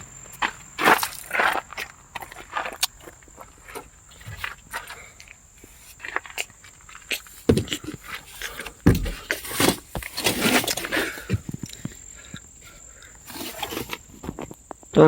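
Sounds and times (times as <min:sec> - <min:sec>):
scraping and rustling: 0:00.8 - 0:11.9, 0:12.6 - 0:14.7
knocks and clunks: 0:07.1 - 0:12.0.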